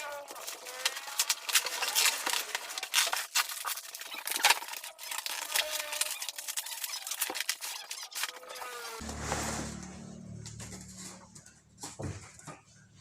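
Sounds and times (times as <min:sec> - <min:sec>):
package being handled and cut open: 0:00.0 - 0:09.1.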